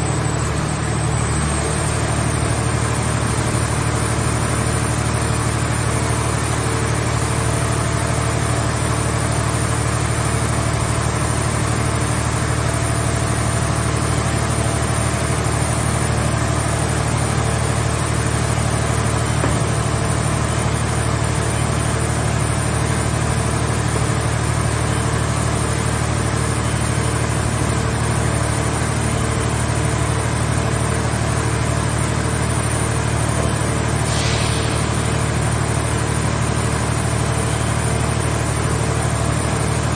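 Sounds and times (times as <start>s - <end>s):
hydraulic power unit droning: 0.0s - 39.9s
brief hiss: 34.0s - 35.4s.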